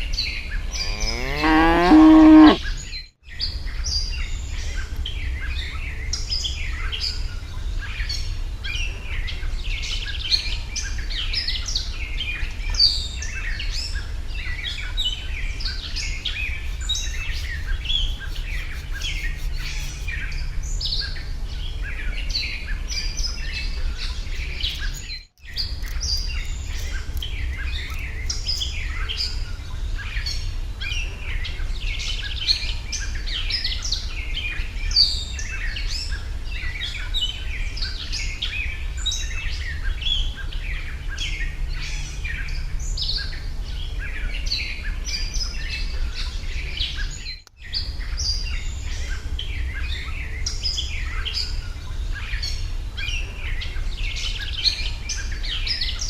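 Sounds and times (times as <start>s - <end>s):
small birds chirping: 12.4s - 30.4s.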